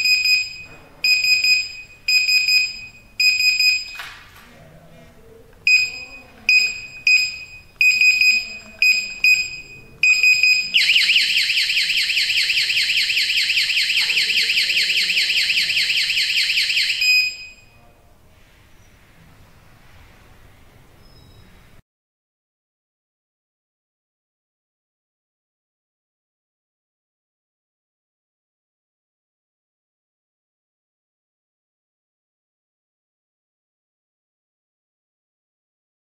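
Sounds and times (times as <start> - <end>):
keypad buzzer short high beeps: 0.0 - 4.0, 5.7 - 11.1, 16.9 - 17.7
loud warbling alarm: 5.7 - 17.8.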